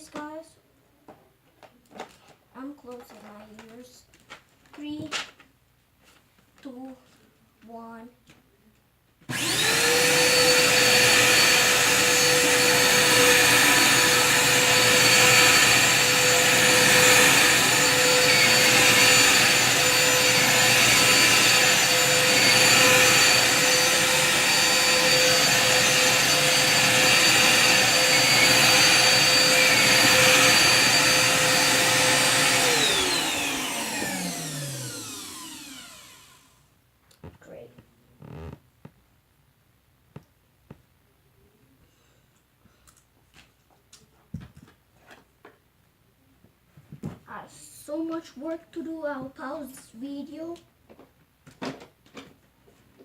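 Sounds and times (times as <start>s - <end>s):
vacuum cleaner whining: 9.3s - 36.7s, 38.2s - 38.6s.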